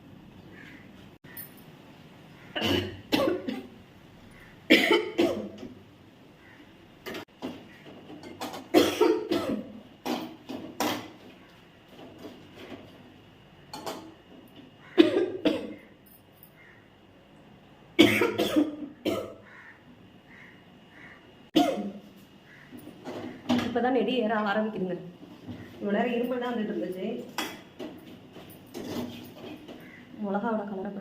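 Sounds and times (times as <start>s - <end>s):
person coughing: 2.6s - 3.7s, 4.7s - 5.6s, 8.8s - 9.7s, 15.0s - 15.8s, 18.0s - 19.4s, 21.6s - 22.0s.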